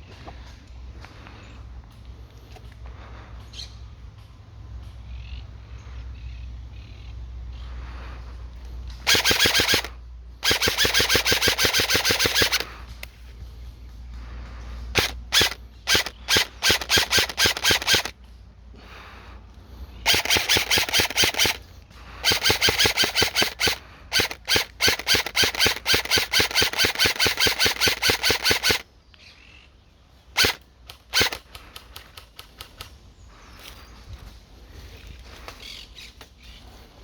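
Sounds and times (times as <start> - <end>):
airsoft gun firing: 9.0 - 13.0, 14.9 - 18.2, 20.0 - 28.9, 30.4 - 32.8.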